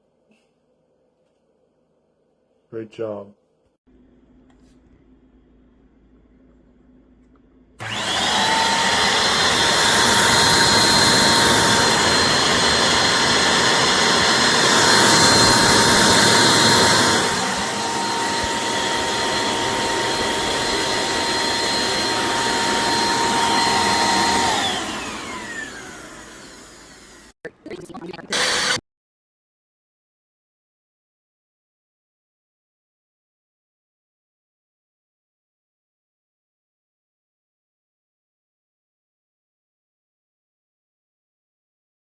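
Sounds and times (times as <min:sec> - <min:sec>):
vacuum cleaner motor whine: 0:07.8 - 0:27.3, 0:28.3 - 0:28.8.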